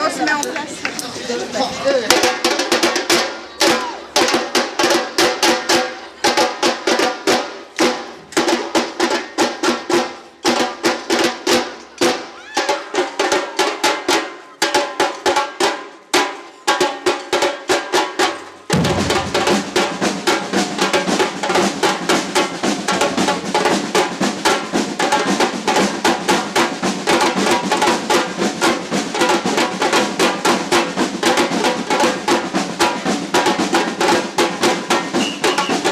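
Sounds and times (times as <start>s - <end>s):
samba percussion band drumming: 0.0s - 35.9s
snare drum rolls: 15.0s - 35.9s
deep bass drums: 18.7s - 20.4s.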